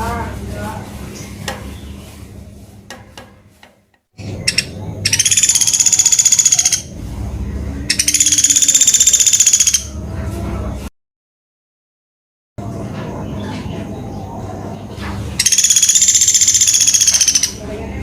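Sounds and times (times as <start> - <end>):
woodpecker trilling: 3.7 - 7.0, 7.9 - 10.0, 15.4 - 17.6.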